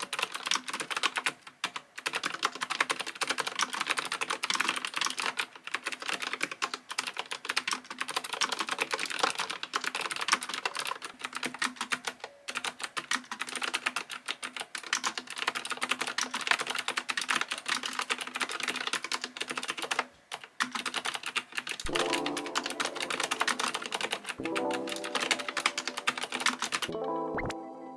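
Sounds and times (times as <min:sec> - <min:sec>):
typing on clicky mechanical keyboard: 0:00.0 - 0:26.9
background music: 0:21.9 - 0:27.9.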